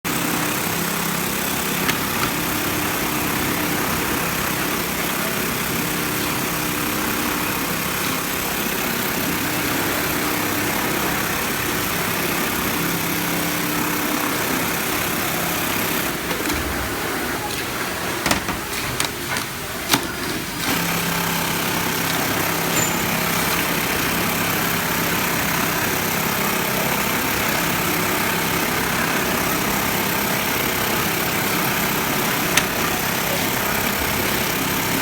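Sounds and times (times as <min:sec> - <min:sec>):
sewing machine mechanical hiss: 0:00.1 - 0:35.0
motor hum: 0:12.0 - 0:35.0.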